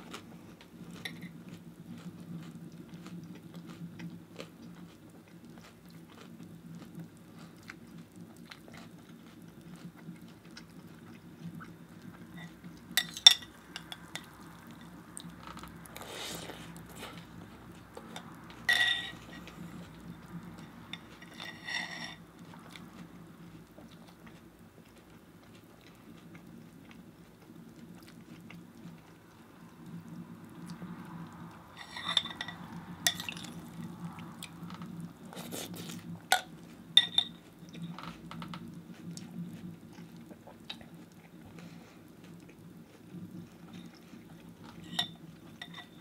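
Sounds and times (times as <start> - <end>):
spoon clinking against bowl: 18.7 - 19.3, 36.3 - 37.4, 44.8 - 46.0.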